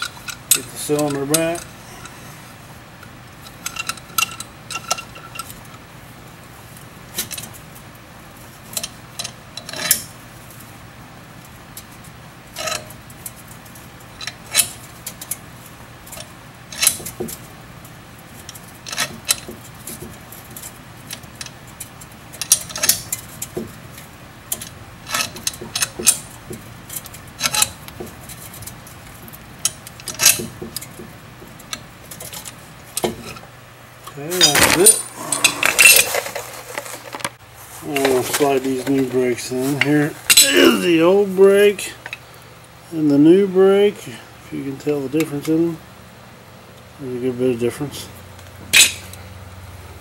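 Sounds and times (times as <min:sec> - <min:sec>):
metal tools clinking: 0:00.0 - 0:02.2, 0:03.4 - 0:05.6, 0:12.6 - 0:13.4, 0:18.5 - 0:23.6, 0:24.5 - 0:28.8, 0:29.6 - 0:31.0, 0:34.1 - 0:37.3, 0:37.9 - 0:41.0, 0:48.7 - 0:49.2.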